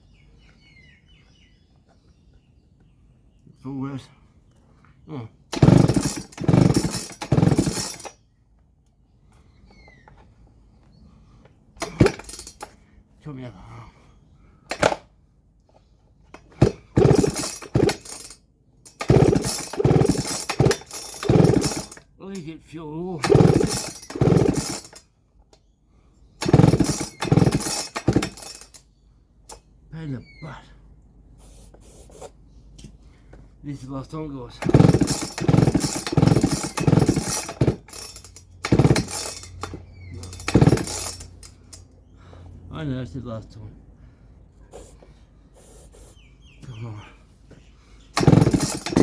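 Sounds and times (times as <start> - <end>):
chainsaw recoil starter pulls: 5.5 - 8.2, 11.8 - 12.8, 14.7 - 15.1, 16.3 - 22.5, 23.2 - 25.1, 26.4 - 28.8, 34.5 - 41.9, 48.1 - 49.0
engine turning over ticking: 5.5 - 8.2, 11.8 - 12.7, 16.4 - 18.3, 18.9 - 22.0, 23.2 - 25.0, 26.4 - 28.8, 34.6 - 41.9, 48.1 - 49.0.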